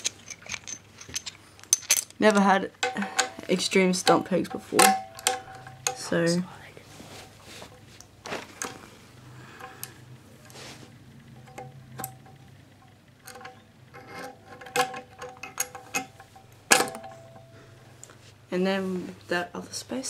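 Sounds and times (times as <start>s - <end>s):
metal parts knocking and clinking: 0.0s - 6.4s, 11.2s - 18.0s
light taps with ringing tone: 2.8s - 6.2s, 15.2s - 17.9s.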